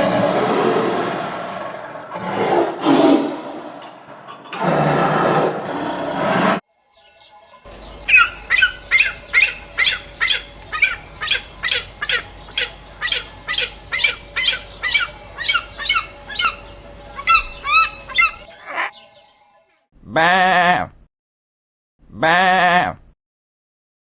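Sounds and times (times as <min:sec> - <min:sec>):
bird squawking honks: 0:07.6 - 0:19.3.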